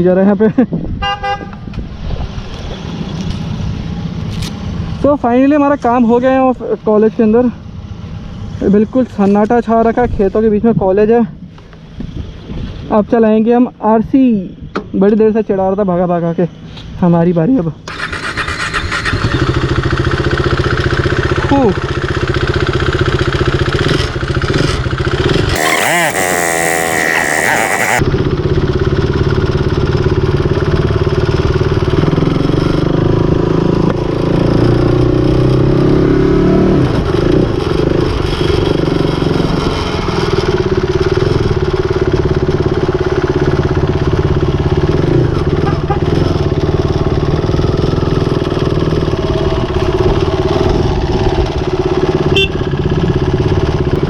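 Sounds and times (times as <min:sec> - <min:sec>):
motorcycle engine running: 0:19.4 - 0:33.9, 0:37.0 - 0:54.0.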